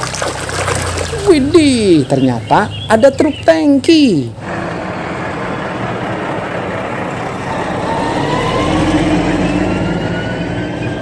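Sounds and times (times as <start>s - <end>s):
heavy truck engine passing: 4.1s - 11.0s
rising engine whine: 4.3s - 11.0s.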